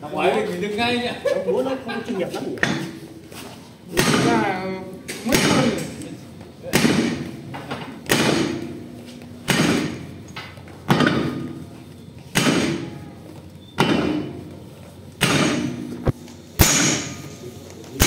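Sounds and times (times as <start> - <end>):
hammer striking steel: 3.9 - 4.5, 6.7 - 11.6, 12.3 - 13.0, 13.8 - 14.4, 15.2 - 17.4.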